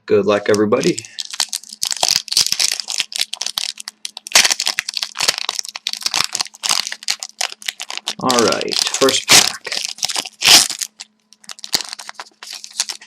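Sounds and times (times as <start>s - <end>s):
plastic wrapper crinkling: 0.5s - 13.0s.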